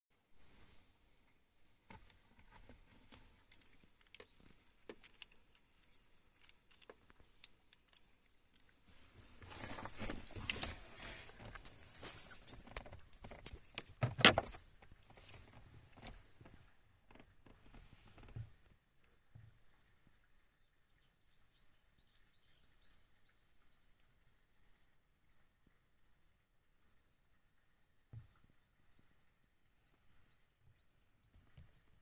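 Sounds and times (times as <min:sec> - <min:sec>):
handling rustling and clicking: 0:01.9 - 0:18.4.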